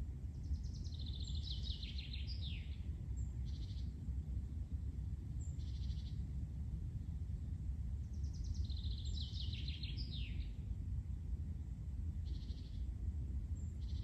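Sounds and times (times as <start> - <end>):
low outdoor rumble: 0.0 - 14.0.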